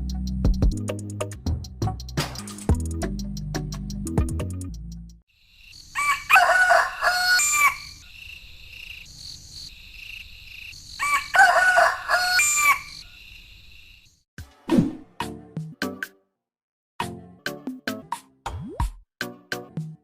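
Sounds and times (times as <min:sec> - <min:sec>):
insect chirring: 0:05.4 - 0:11.4, 0:12.1 - 0:14.2
rooster crowing: 0:05.6 - 0:08.9, 0:10.8 - 0:13.4.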